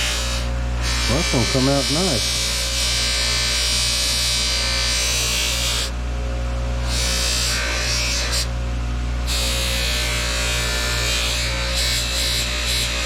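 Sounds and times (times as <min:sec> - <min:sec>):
buffing wheel motor hum: 0:00.9 - 0:02.4.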